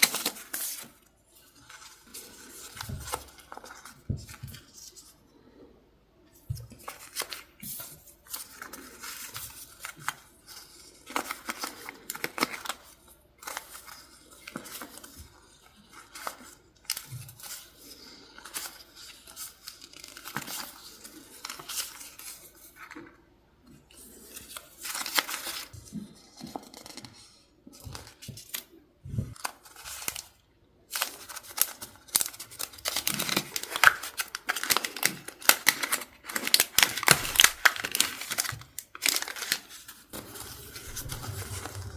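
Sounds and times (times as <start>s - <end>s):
paper rustling and tearing: 31.0s - 41.9s.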